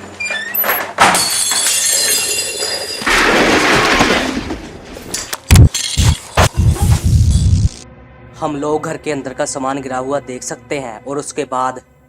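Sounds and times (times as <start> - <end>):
glass fragments clinking: 1.0 - 4.0
glass shattering: 1.0 - 6.5.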